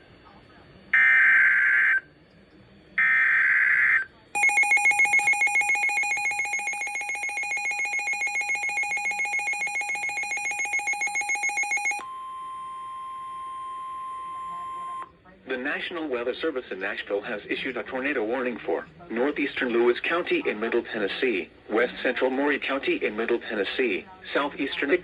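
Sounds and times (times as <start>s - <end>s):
rapidly pulsing alarm tone: 3.0s - 12.0s
steady warning tone: 4.4s - 12.3s.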